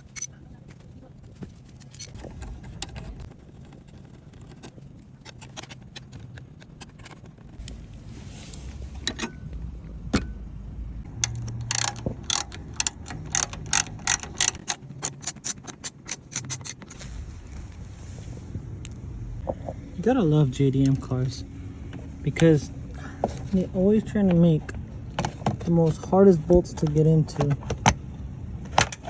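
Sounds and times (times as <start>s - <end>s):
ratchet wrench clicking: 11.2s - 17.0s.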